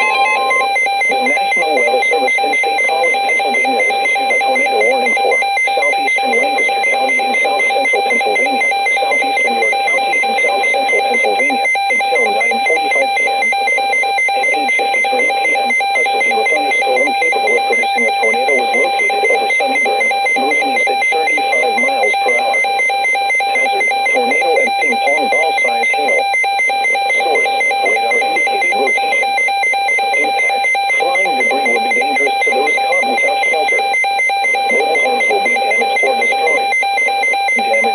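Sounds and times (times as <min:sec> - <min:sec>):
steady electronic alarm tone: 0:00.0 - 0:37.9.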